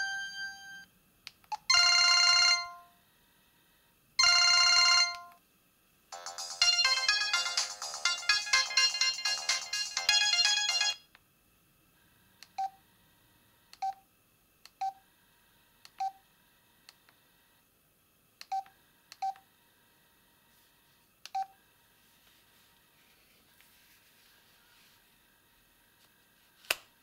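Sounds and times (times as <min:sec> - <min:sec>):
mobile phone ringtone melody: 0:00.0 - 0:00.8, 0:01.7 - 0:02.9, 0:04.2 - 0:05.3, 0:06.2 - 0:11.0.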